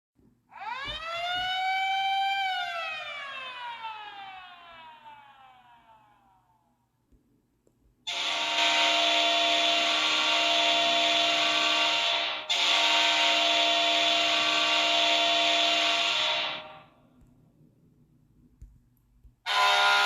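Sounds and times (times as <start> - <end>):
hockey goal horn blasts: 8.1 - 16.7, 19.5 - 20.0.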